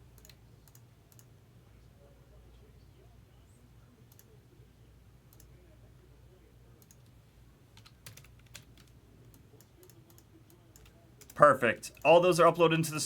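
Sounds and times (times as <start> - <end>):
faint low hum: 0.0 - 13.0
computer keyboard typing: 0.1 - 1.3, 7.7 - 12.1.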